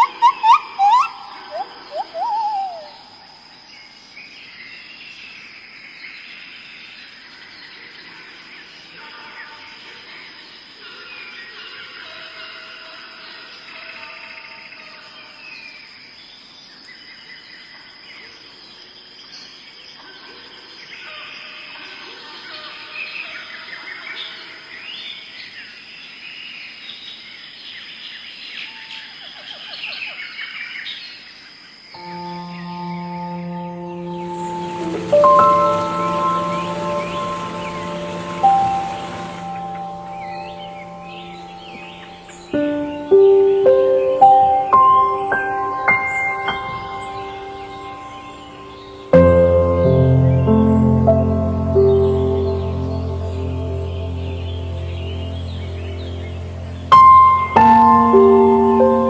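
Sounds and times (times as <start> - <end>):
bird whistling: 0.0 - 3.2
low repeated bird notes: 0.0 - 3.6, 32.0 - 59.0
faint bird chirps: 0.0 - 4.0
birds chirping and trilling: 0.0 - 5.3, 32.0 - 59.0
insect drone: 31.4 - 59.0.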